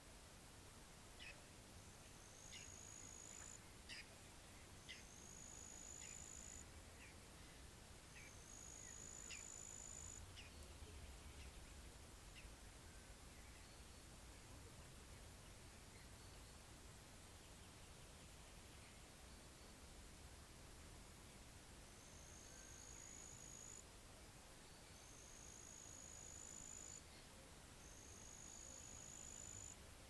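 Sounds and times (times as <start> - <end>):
faint low rumble: 10.1 - 22.0.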